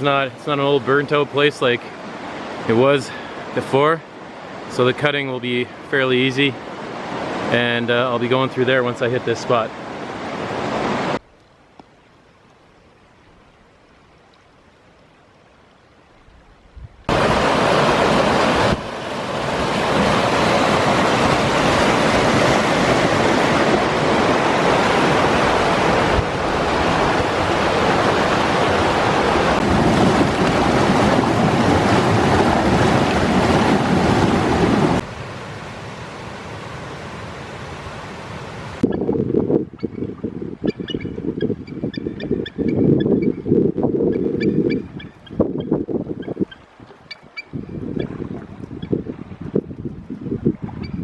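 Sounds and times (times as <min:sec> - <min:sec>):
whitewater rapid rushing: 0:17.1 - 0:35.8.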